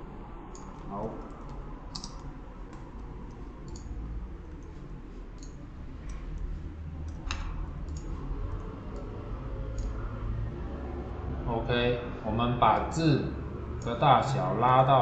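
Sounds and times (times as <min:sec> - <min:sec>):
low steady hum: 0:00.0 - 0:15.0
computer mouse and keyboard clicks: 0:00.5 - 0:10.0.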